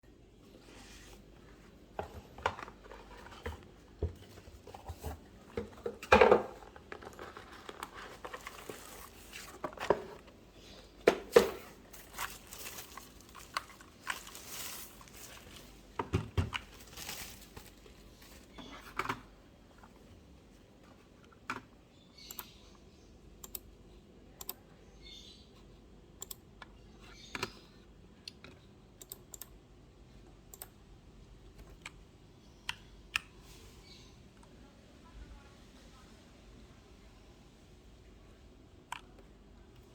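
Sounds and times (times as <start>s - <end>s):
rustling: 6.8s - 10.3s, 11.6s - 16.0s, 16.6s - 18.8s.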